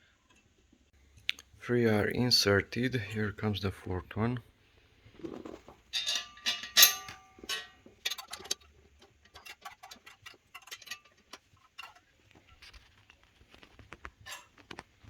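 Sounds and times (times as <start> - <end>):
metal parts clacking: 5.4 - 15.0.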